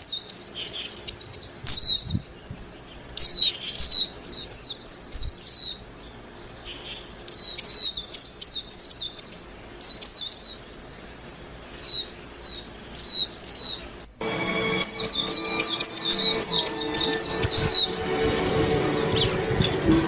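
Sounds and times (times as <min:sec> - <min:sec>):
bird chirping high notes: 0:11.8 - 0:20.0.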